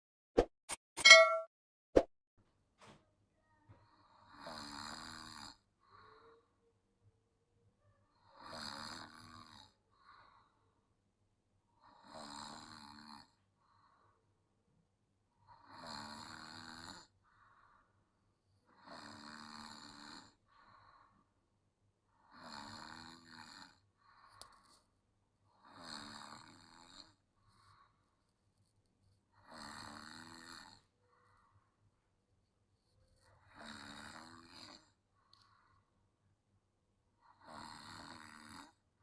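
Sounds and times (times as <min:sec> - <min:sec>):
child snoring: 0:04.0 - 0:06.5, 0:08.1 - 0:10.4, 0:11.8 - 0:13.4, 0:15.4 - 0:17.2, 0:18.7 - 0:20.5, 0:22.2 - 0:24.5, 0:25.5 - 0:27.8, 0:29.4 - 0:30.9, 0:33.2 - 0:35.0, 0:37.2 - 0:38.8.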